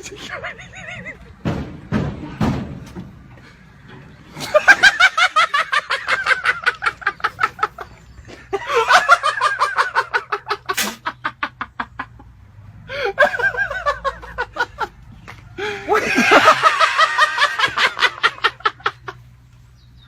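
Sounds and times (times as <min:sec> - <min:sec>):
person laughing hard: 0:00.0 - 0:01.4, 0:04.4 - 0:12.2, 0:12.9 - 0:14.9, 0:15.6 - 0:19.2.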